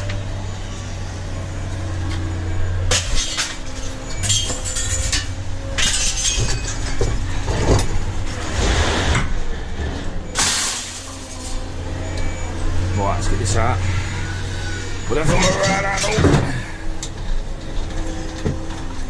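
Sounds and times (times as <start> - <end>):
scrap metal and glass clattering: 2.9 - 9.4, 10.3 - 12.4, 15.0 - 16.8.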